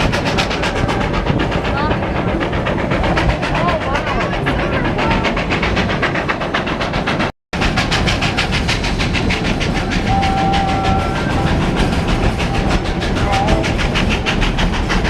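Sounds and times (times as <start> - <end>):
steam train running: 0.0 - 15.0.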